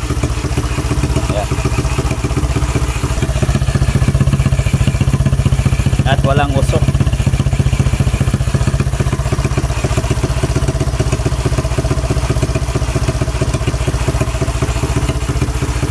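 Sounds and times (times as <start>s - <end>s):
scooter engine idling: 0.0s - 15.9s.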